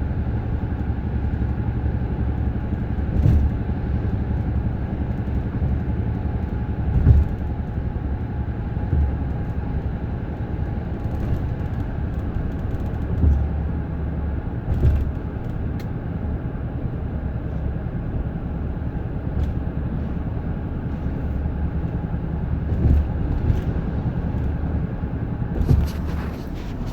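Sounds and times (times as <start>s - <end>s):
car driving with low drone: 0.0s - 26.9s
brake thumps: 3.0s - 16.0s, 16.8s - 26.9s.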